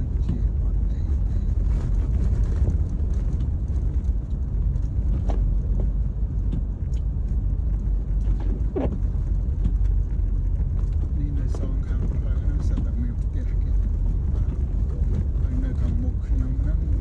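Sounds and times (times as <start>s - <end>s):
car rumble from inside cabin: 0.0s - 17.0s.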